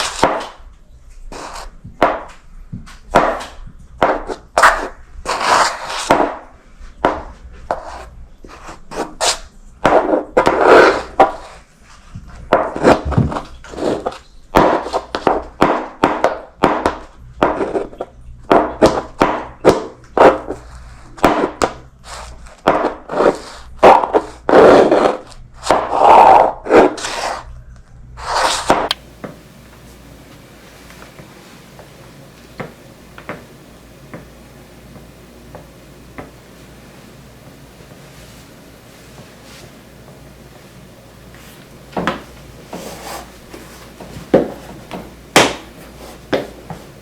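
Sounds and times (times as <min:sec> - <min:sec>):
shoes scuffing: 0:28.7 - 0:47.0
faint hiss: 0:28.9 - 0:43.9
footsteps on hardwood floor: 0:28.9 - 0:47.0.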